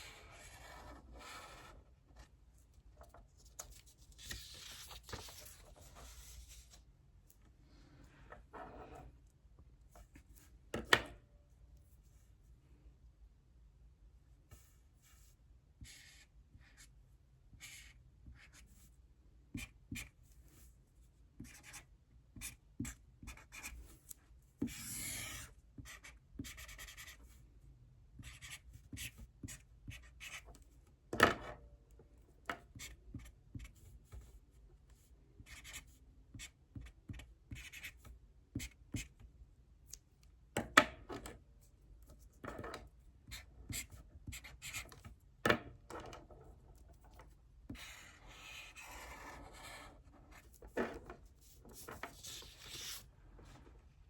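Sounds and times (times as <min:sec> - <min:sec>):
pen scratching on paper: 0:00.0 - 0:01.8, 0:17.6 - 0:18.6, 0:21.4 - 0:21.8, 0:22.4 - 0:23.8, 0:24.7 - 0:27.2, 0:35.5 - 0:35.8, 0:37.1 - 0:38.0, 0:43.3 - 0:45.0, 0:47.7 - 0:53.0.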